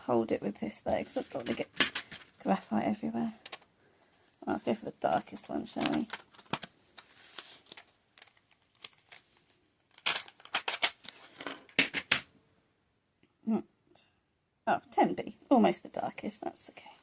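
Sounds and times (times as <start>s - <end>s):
pencils clicking and rattling: 1.1s - 2.4s, 3.4s - 3.7s, 5.1s - 6.7s, 7.4s - 12.3s.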